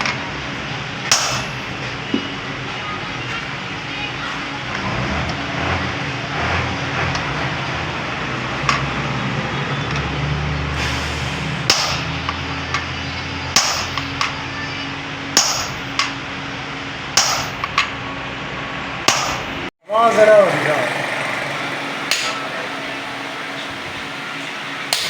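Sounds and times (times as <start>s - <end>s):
hammer striking metal: 1.1s - 1.8s, 11.7s - 12.4s, 13.5s - 14.4s, 15.3s - 16.2s, 17.2s - 18.0s, 19.1s - 19.6s, 21.8s - 25.0s.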